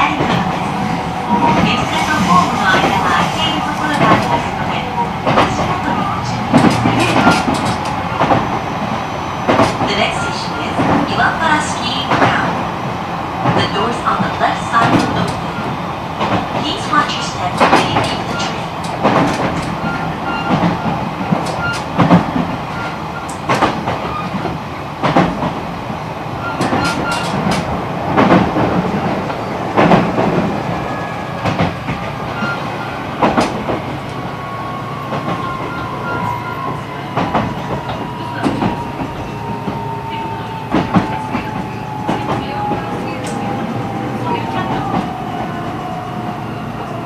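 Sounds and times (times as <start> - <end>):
train rolling rumble: 0.0 - 47.0.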